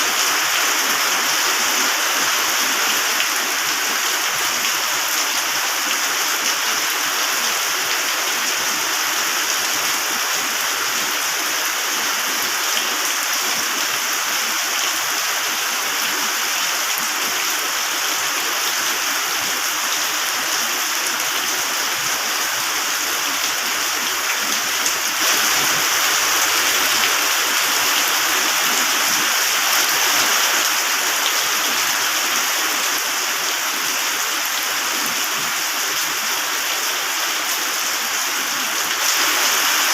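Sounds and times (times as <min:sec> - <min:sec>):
heavy rain hissing: 0:13.2 - 0:37.8, 0:38.4 - 0:39.9.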